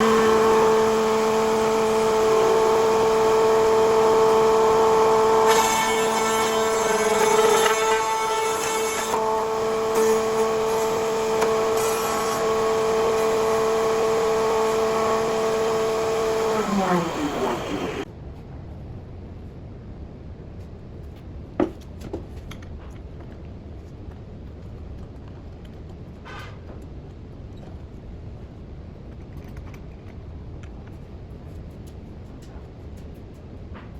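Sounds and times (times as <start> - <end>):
power tool motor whine: 0.0 - 18.1.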